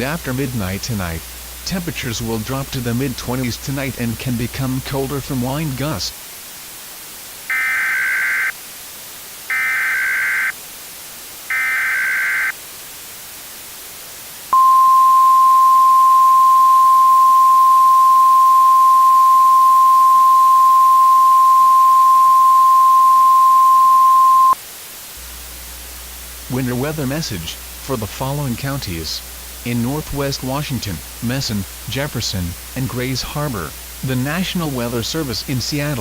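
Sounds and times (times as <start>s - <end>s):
screechy digital data bursts: 7.5s - 8.5s, 9.5s - 10.5s
loud steady alarm beep: 11.5s - 12.5s, 14.6s - 24.6s.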